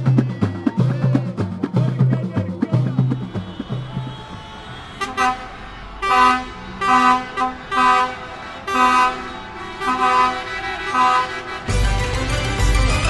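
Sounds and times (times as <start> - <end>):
vehicle horns honking: 2.0 - 12.1.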